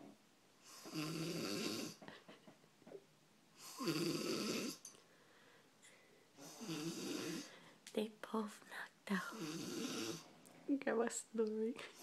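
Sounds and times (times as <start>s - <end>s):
person snoring: 0.6s - 2.0s, 3.6s - 4.8s, 6.4s - 7.6s, 9.2s - 10.2s.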